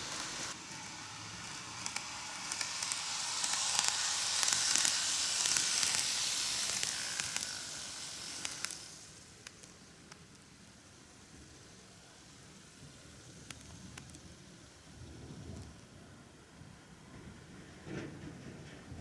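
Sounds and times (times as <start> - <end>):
rail joint clicks: 0.0 - 10.4
model train rushing past: 0.0 - 19.0.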